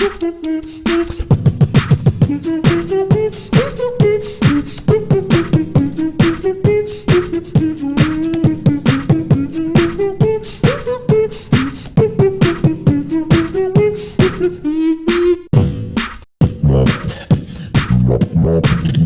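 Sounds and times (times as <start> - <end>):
person singing melody: 0.0 - 1.4, 2.2 - 15.5
beatboxing: 0.0 - 19.0.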